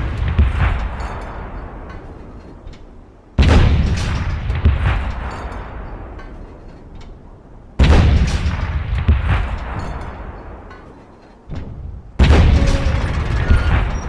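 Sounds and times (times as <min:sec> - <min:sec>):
artillery explosions rumbling: 0:00.0 - 0:14.0
faint gunshots: 0:03.4 - 0:05.9, 0:07.8 - 0:10.3, 0:12.2 - 0:14.0.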